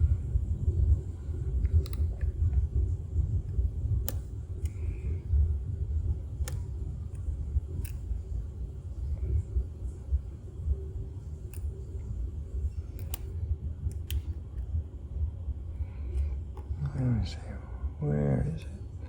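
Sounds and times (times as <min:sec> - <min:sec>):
lock pick clicks: 0:01.6 - 0:02.3, 0:12.9 - 0:13.3.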